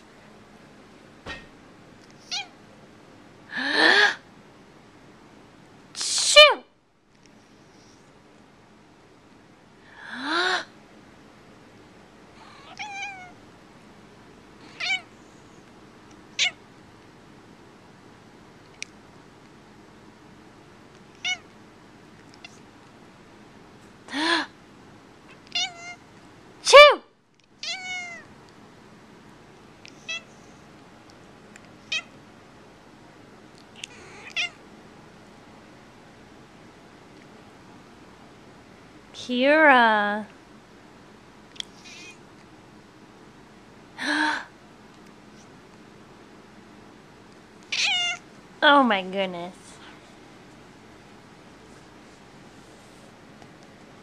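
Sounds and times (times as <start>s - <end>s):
cat meowing: 2.2s - 2.6s, 12.6s - 13.4s, 14.7s - 15.1s, 16.4s - 16.6s, 21.2s - 21.4s, 25.3s - 26.0s, 27.6s - 28.3s, 29.9s - 30.3s, 33.8s - 34.6s, 47.7s - 48.2s.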